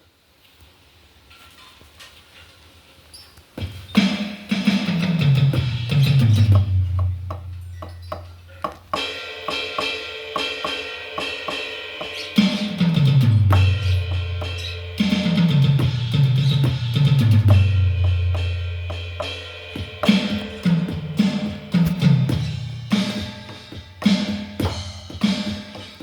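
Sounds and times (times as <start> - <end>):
drum kit beat: 3.6 - 26.0
low bass notes: 5.4 - 8.0, 13.0 - 23.0.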